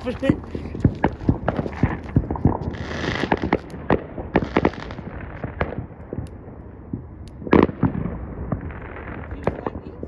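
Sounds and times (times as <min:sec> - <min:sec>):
fireworks cracking and popping: 0:00.0 - 0:10.0.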